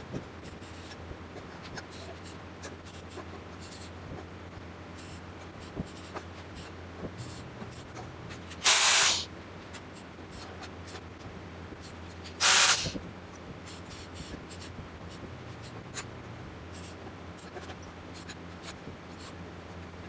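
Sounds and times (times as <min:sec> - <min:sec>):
welding torch hissing: 0:08.6 - 0:09.3, 0:12.4 - 0:13.0.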